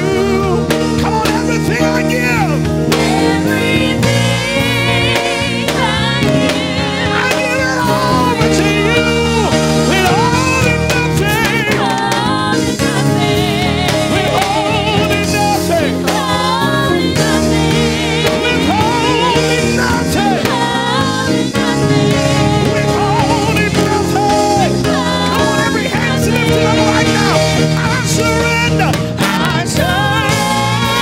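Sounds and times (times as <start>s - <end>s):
band playing sustained chords: 0.0s - 31.0s
person singing: 18.2s - 20.7s.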